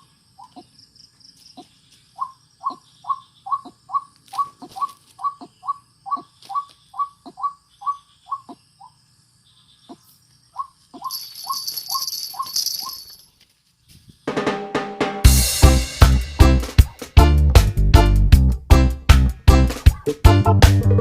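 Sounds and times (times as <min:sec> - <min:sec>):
bird calling in clipped notes: 0:01.6 - 0:08.6.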